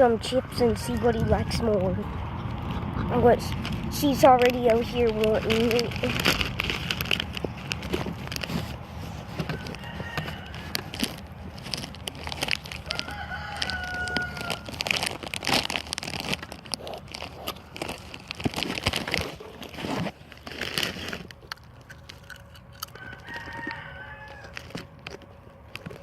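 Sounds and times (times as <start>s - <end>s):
rooster crowing: 0.4s - 1.7s, 9.4s - 11.1s, 12.8s - 14.8s, 22.8s - 24.8s
crackling and rustling: 0.8s - 26.0s.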